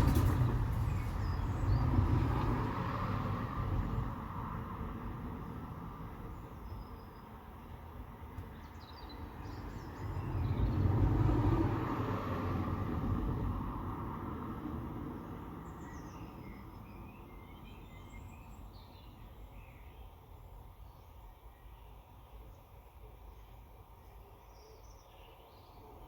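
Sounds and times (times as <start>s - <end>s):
vehicle passing by: 0.0s - 6.4s, 9.2s - 18.4s.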